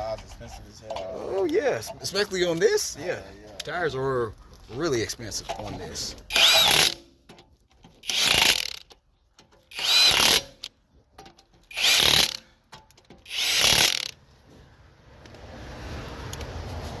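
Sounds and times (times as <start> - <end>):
impact wrench whirring and hammering: 6.3 - 7.2, 7.9 - 9.0, 9.6 - 10.8, 11.5 - 14.2.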